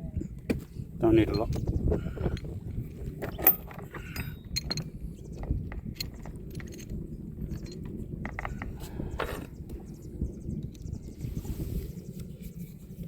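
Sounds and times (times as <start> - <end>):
metal shackle clicking and clinking: 1.1 - 9.6.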